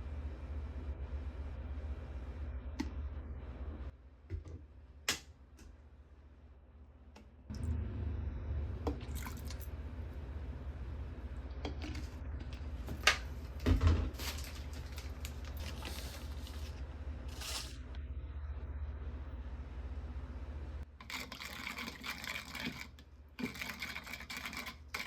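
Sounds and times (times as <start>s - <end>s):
steady low hum: 0.0s - 21.0s
wet squishy food preparation: 8.7s - 10.3s.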